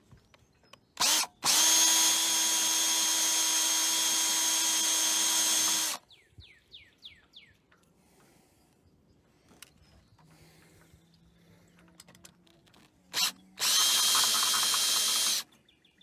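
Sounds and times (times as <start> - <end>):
power drill drilling metal: 1.0 - 6.0, 13.1 - 15.5.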